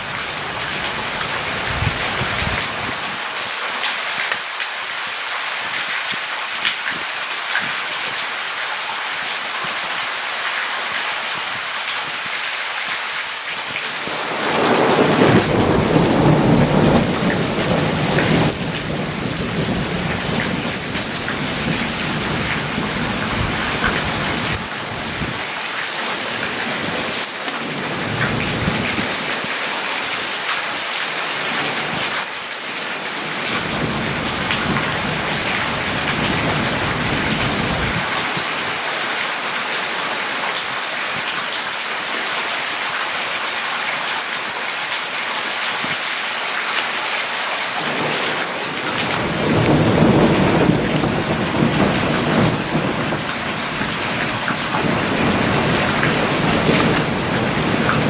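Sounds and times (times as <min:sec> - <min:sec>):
heavy rain hissing: 0:12.8 - 0:42.8, 0:46.4 - 0:58.0
thunder rumbling: 0:14.0 - 0:25.4, 0:47.9 - 0:58.0.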